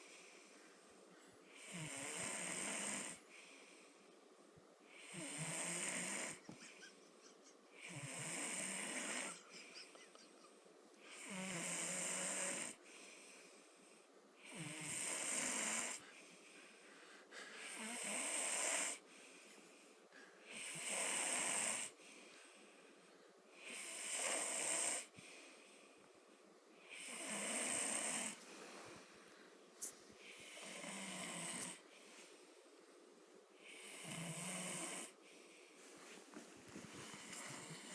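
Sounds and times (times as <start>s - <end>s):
man snoring: 1.6s - 3.2s, 5.0s - 6.4s, 7.8s - 9.4s, 11.1s - 12.8s, 14.4s - 16.0s, 17.6s - 19.0s, 20.5s - 21.9s, 23.6s - 25.1s, 26.9s - 28.4s, 30.5s - 31.8s, 33.8s - 35.2s.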